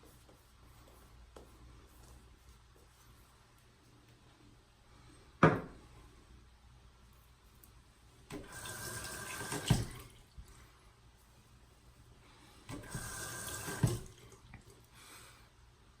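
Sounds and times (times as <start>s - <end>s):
sink tap water splashing: 8.3s - 10.4s, 12.7s - 14.7s.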